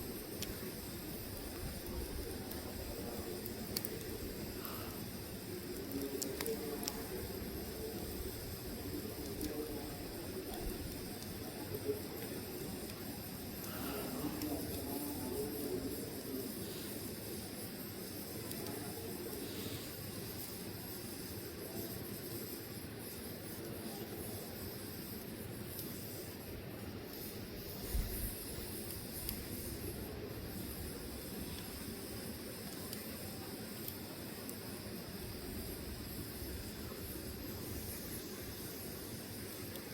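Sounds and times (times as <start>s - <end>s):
burning logs crackling: 0.0s - 39.9s
sharp pops of fire: 0.0s - 39.9s.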